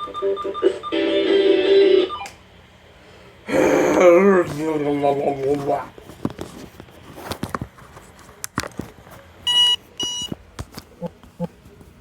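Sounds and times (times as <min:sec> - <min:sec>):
short electronic beeps: 0:09.5 - 0:10.3.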